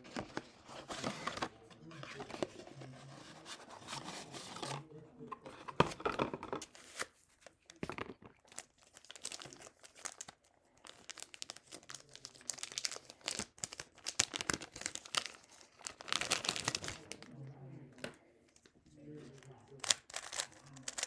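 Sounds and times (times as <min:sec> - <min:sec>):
plastic packaging crinkling and tearing: 0:08.3 - 0:17.3, 0:19.2 - 0:21.0.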